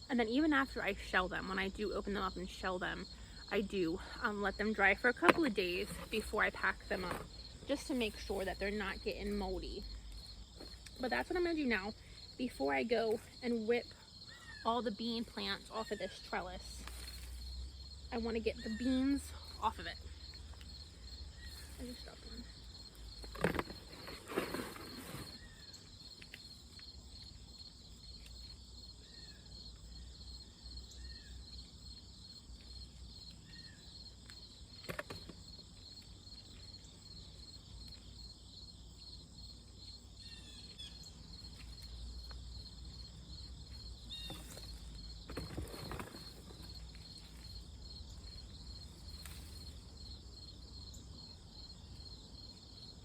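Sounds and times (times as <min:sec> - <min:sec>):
insects chirping: 0:00.0 - 0:53.0.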